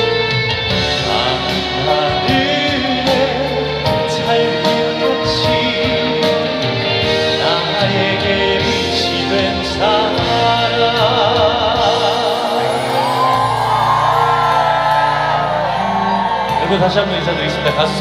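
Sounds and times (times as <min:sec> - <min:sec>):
live band playing ballad: 0:00.0 - 0:18.0
man singing with vibrato: 0:00.7 - 0:13.8.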